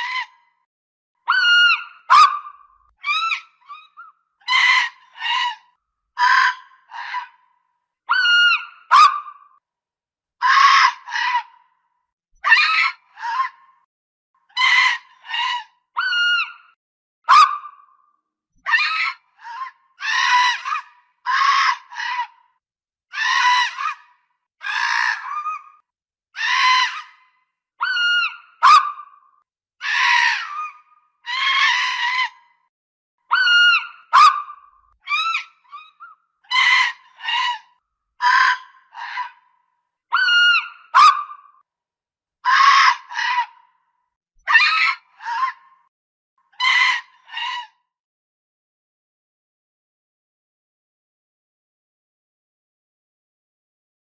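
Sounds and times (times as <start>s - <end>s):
fox barking: 1.7s - 2.6s, 8.8s - 9.4s, 17.3s - 17.8s, 28.2s - 29.1s, 33.7s - 34.6s, 40.2s - 41.4s.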